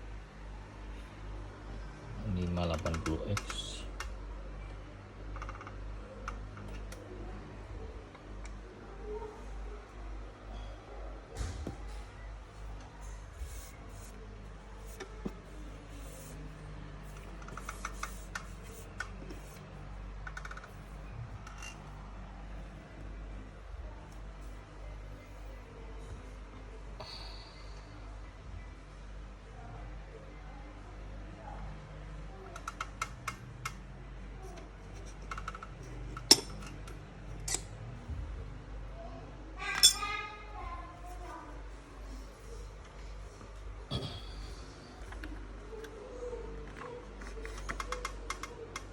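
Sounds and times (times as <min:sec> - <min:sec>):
steady low hum: 0:00.0 - 0:48.9
metal hardware clicking: 0:35.3 - 0:36.8, 0:39.7 - 0:40.0.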